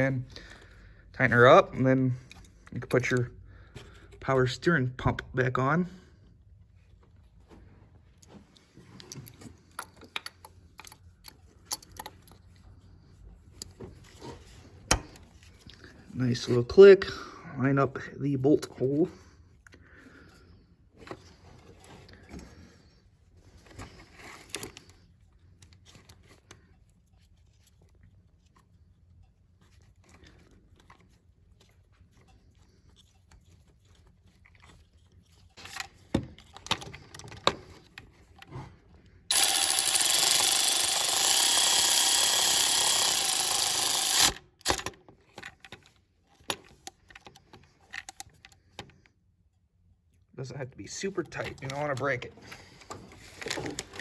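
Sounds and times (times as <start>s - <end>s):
power tool driving bolt: 39.3s - 45.0s.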